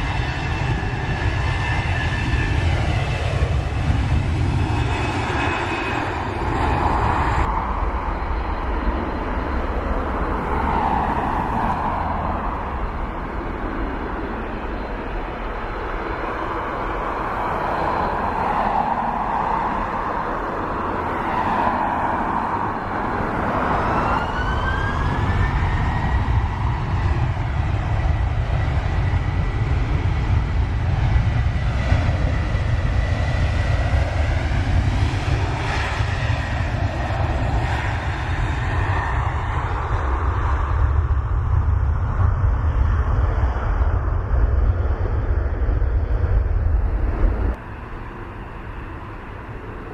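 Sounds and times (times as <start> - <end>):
jet engine whine: 0.0 - 49.9
jet engines rumbling: 0.0 - 49.9.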